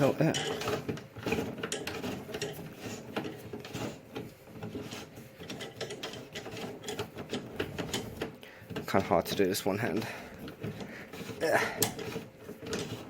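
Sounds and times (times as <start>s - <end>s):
metallic clicks and rattles: 5.4s - 13.0s.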